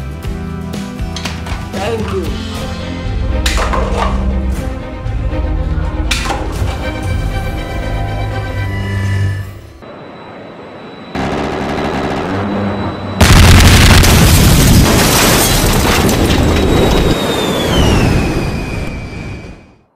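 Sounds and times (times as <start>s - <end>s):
rumbling explosion boom: 11.2s - 19.5s.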